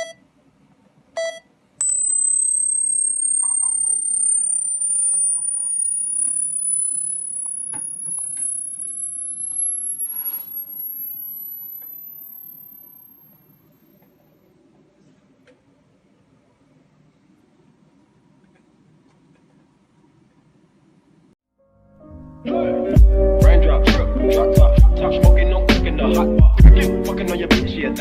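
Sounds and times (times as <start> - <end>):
short beep: 1.2 - 13.4
rising high-pitched test tone: 1.8 - 13.6.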